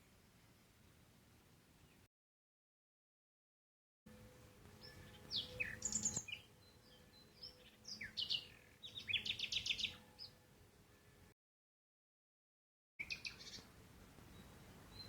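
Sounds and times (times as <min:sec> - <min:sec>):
small bird chirping: 0:04.8 - 0:10.3, 0:13.0 - 0:13.6.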